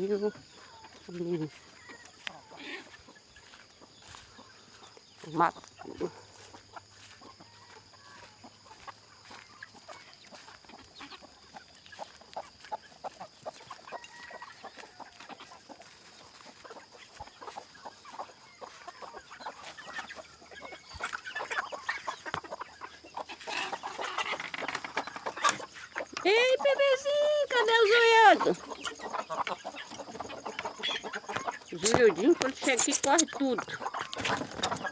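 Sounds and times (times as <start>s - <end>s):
chickens clucking: 0.0s - 34.9s
scratching and pecking: 9.5s - 26.9s, 28.2s - 34.9s.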